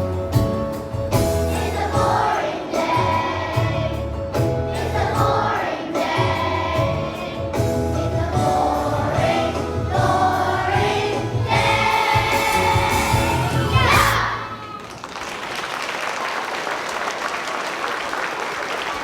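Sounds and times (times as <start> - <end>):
instrumental accompaniment with bass: 0.0 - 14.5
children's choir singing: 1.2 - 14.8.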